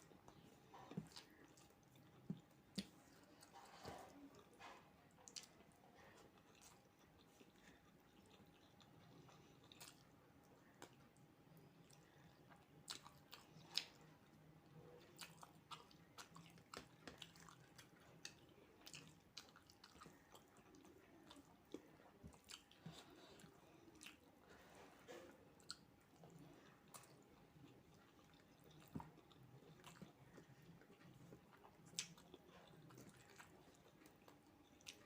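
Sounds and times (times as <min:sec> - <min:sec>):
person chewing food: 0:00.0 - 0:35.0.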